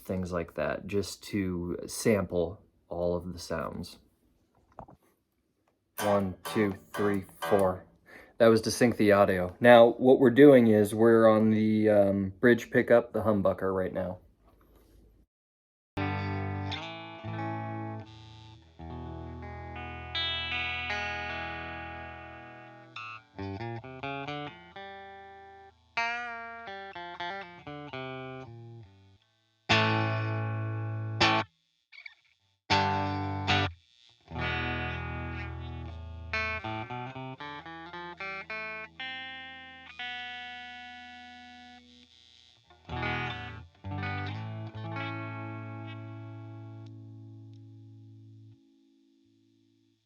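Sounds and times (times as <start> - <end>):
electric guitar playing: 6.0 - 8.8, 16.0 - 31.5, 32.7 - 48.8.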